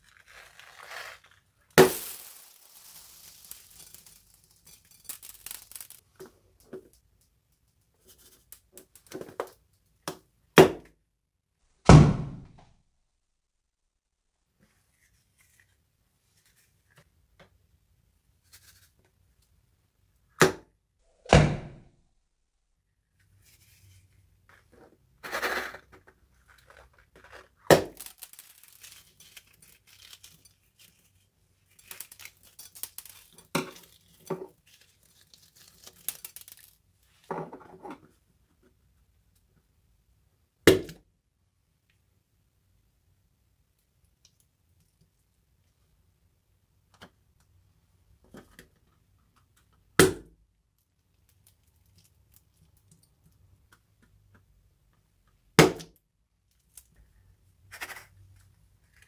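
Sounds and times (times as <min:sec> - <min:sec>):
slime squishing by hand: 0:00.0 - 0:01.6.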